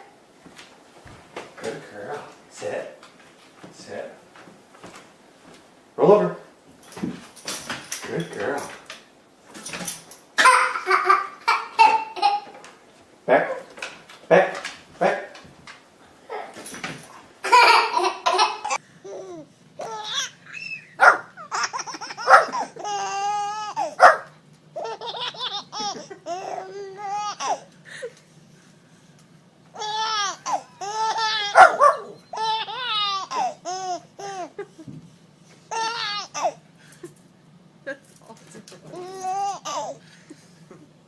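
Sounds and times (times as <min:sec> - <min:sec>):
baby laughing: 0:10.4 - 0:12.6, 0:17.4 - 0:24.1, 0:24.7 - 0:28.0, 0:29.8 - 0:34.9, 0:35.7 - 0:36.6, 0:38.9 - 0:41.0.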